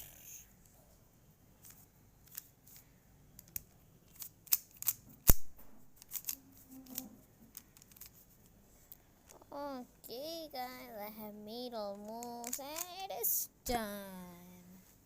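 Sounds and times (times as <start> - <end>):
puzzle cube clicking as turned: 1.6 - 2.8, 3.4 - 8.2, 11.9 - 13.1.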